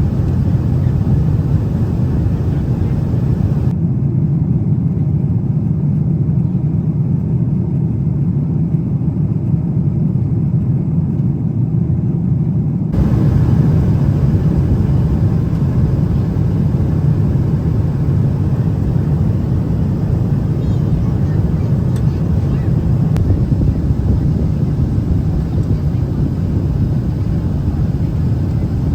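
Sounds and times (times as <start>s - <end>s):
airplane cabin engine rumble: 0.0s - 3.7s, 12.9s - 28.9s.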